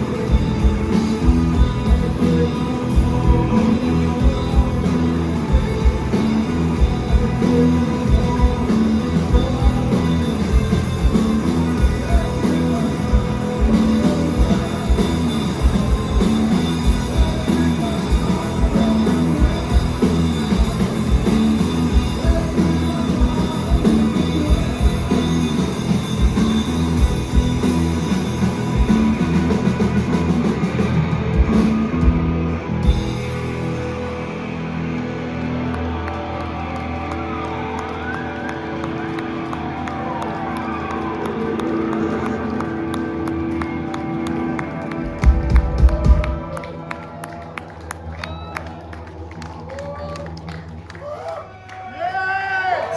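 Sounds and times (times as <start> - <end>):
person singing: 0.0 - 32.2
bass and guitar droning: 0.0 - 51.8
drum beat: 45.0 - 46.6.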